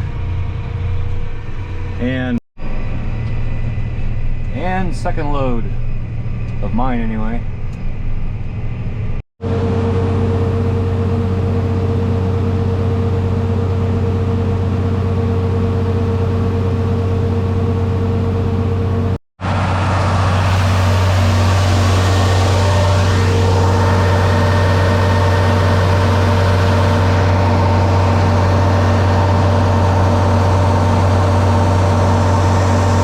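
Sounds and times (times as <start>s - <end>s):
steady whine: 0.0s - 33.0s
farm machine engine running: 9.4s - 33.0s.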